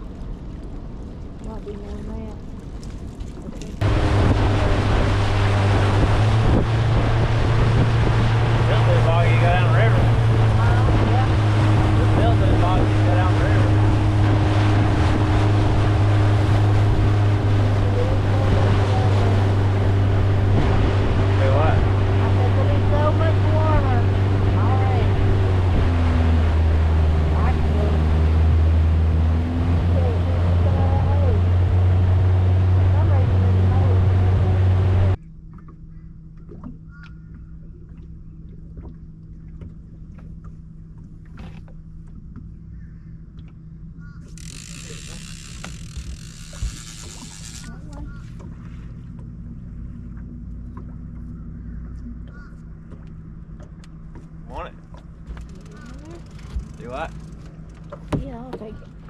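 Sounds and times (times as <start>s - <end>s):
rushing water: 0.0s - 35.2s, 44.3s - 49.2s
wind noise: 0.0s - 35.2s
outboard motor running: 0.0s - 59.0s.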